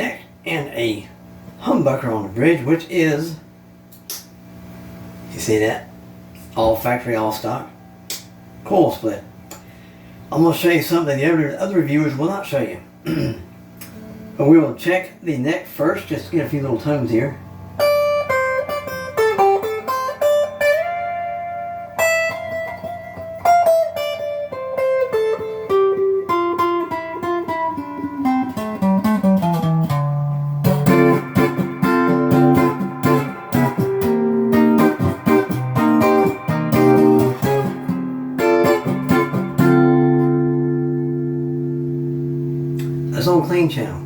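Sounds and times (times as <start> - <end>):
clean electric guitar playing: 13.8 - 14.5, 17.4 - 43.8.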